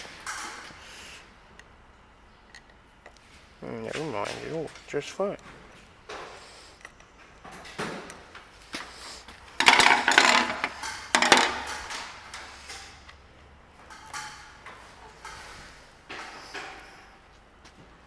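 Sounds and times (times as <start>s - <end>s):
wrench clinking on metal: 9.6s - 12.0s.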